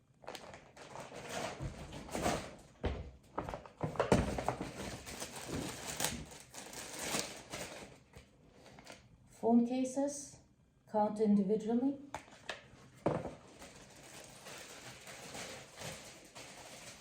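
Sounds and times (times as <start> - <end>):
packaging rustling and clicks: 3.5 - 9.0, 13.2 - 17.0.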